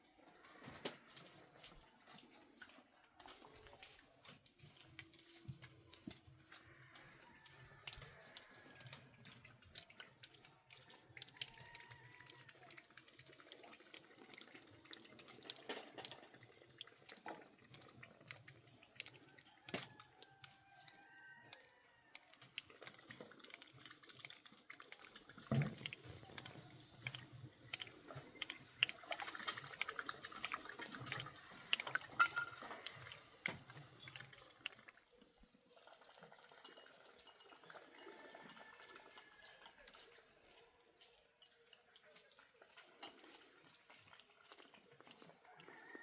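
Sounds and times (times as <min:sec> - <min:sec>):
water pouring and sloshing: 0:00.0 - 0:46.0
knocks and clinks: 0:32.1 - 0:33.0.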